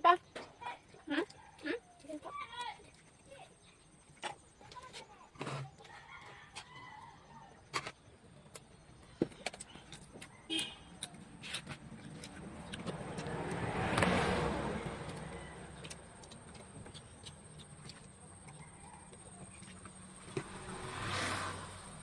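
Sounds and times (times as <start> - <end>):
vehicle passing by: 11.2 - 22.0.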